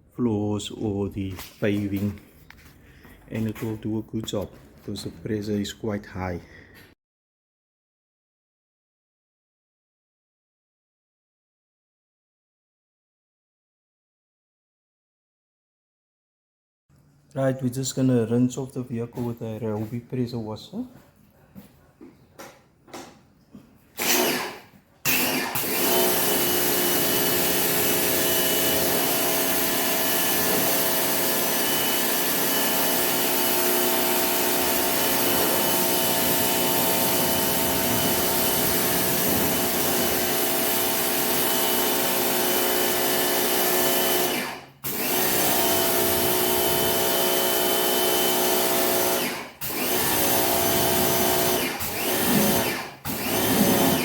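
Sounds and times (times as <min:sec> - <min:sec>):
pressure washer whining: 0:24.0 - 0:54.0
water spraying: 0:34.2 - 0:41.4.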